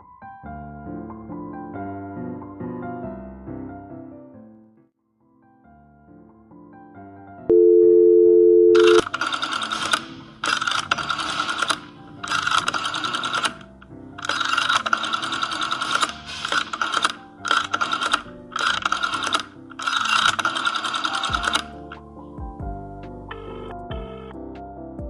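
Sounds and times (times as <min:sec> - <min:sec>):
soft piano music: 0:00.0 - 0:04.8, 0:21.7 - 0:25.0
telephone dial tone: 0:07.5 - 0:09.8
rotary dial clicking and whirring: 0:08.8 - 0:22.0.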